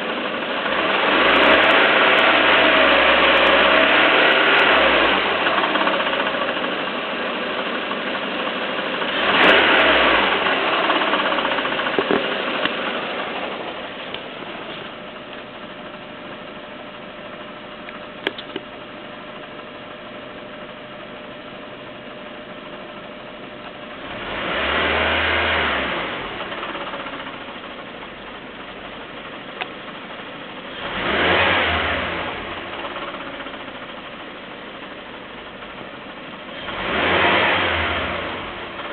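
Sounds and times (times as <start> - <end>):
car engine idling: 0.0 - 38.9
engine revving: 0.4 - 7.6, 8.9 - 15.0, 24.0 - 27.7, 30.7 - 34.0, 36.5 - 38.9.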